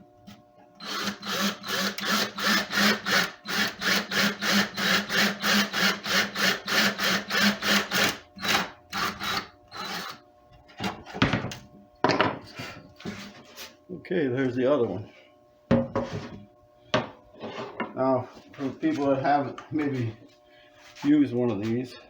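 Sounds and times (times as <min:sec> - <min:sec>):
hand drill rasping through wood: 0:00.8 - 0:10.2.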